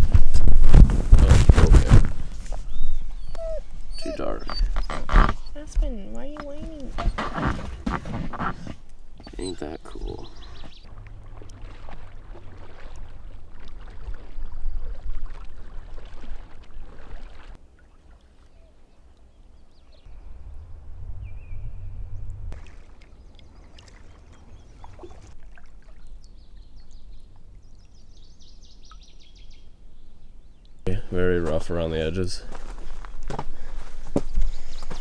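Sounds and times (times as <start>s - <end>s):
wind rumbling on microphone: 0.0s - 8.6s, 20.1s - 22.6s
bird chirping: 2.5s - 7.2s, 9.2s - 10.9s, 19.6s - 22.3s, 26.1s - 31.1s
paddle strokes splashing water: 10.4s - 18.6s, 22.6s - 26.1s.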